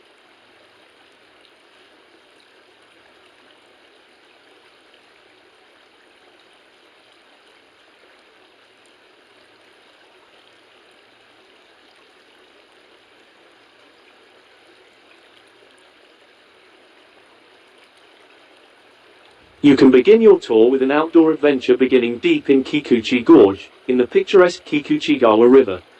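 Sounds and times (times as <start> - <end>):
stream rushing over rocks: 14.3 - 25.9.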